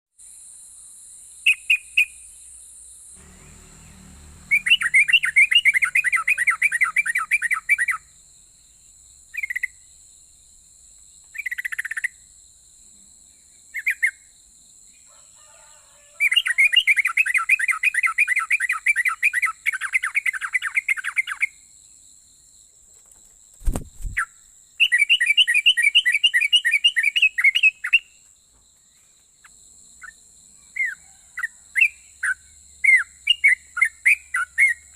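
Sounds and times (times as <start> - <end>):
faint high whine: 3.1 - 8.9
bird single calls: 3.2 - 8.0
bird singing: 3.2 - 21.7, 24.0 - 34.9.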